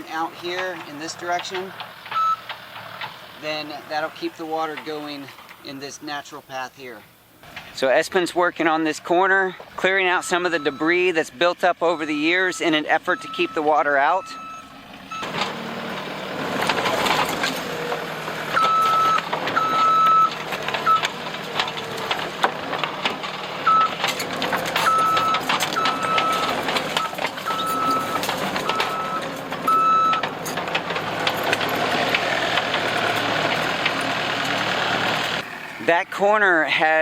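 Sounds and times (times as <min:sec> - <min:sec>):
diesel engine running: 0:00.0 - 0:05.7, 0:09.0 - 0:37.0
backup alarm beeping: 0:02.1 - 0:02.4, 0:10.0 - 0:11.2, 0:11.8 - 0:15.3, 0:18.6 - 0:21.1, 0:23.6 - 0:24.0, 0:24.8 - 0:30.3
rocks and debris clattering: 0:15.1 - 0:35.5.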